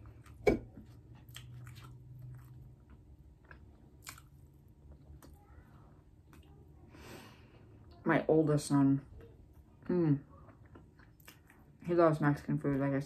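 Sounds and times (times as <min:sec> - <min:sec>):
wet chewing clicks: 0:01.2 - 0:04.5.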